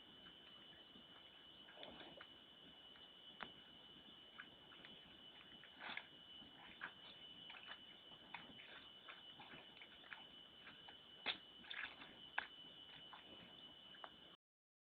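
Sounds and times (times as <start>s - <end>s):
steady high whine: 0.0s - 14.4s
bear eating with wet clicks: 1.6s - 2.4s, 4.3s - 14.2s.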